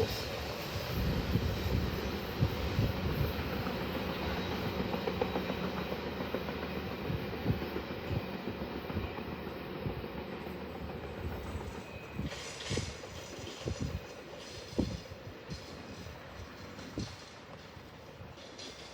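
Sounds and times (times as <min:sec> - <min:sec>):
freight train rumbling past: 0:00.0 - 0:18.9
wheels clicking over rail joints: 0:10.2 - 0:18.9.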